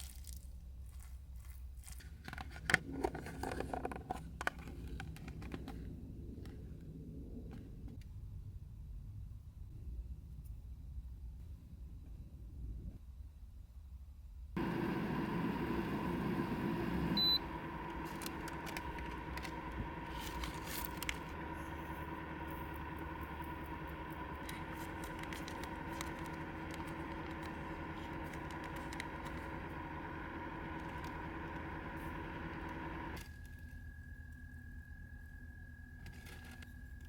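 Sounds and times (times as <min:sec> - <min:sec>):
faint held tone: 0:14.6 - 0:26.0
small machine humming: 0:14.6 - 0:37.0.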